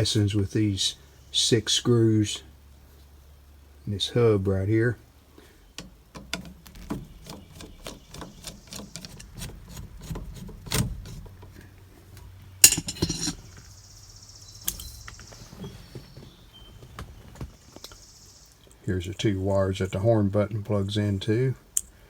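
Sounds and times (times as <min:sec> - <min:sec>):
metal clatter: 0:05.8 - 0:13.7
small metallic clicks and clinks: 0:12.6 - 0:13.6.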